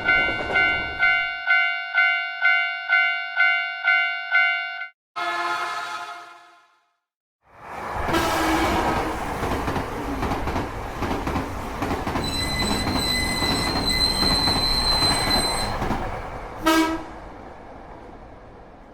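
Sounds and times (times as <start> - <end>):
train rumbling on rails: 0.0 - 1.3, 7.5 - 18.9
train horn note: 5.2 - 6.9, 8.1 - 9.0, 16.6 - 17.2
high wheel squeal: 12.2 - 15.9.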